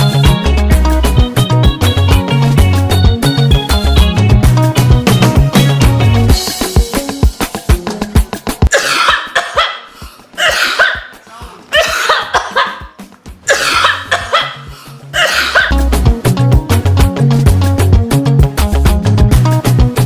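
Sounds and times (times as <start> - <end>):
dance beat: 0.0 - 20.0
person coughing loudly: 8.7 - 15.8.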